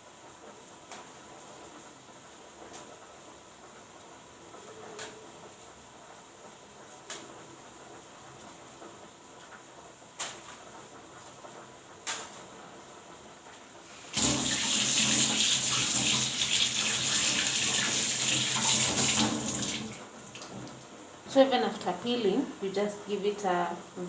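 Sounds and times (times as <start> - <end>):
water running from kitchen tap: 13.8 - 20.9.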